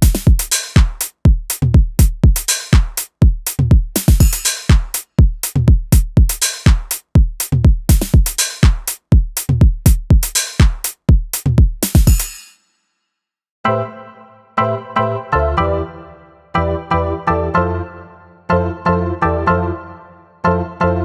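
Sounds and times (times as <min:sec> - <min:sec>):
drum machine pattern: 0:00.0 - 0:12.6.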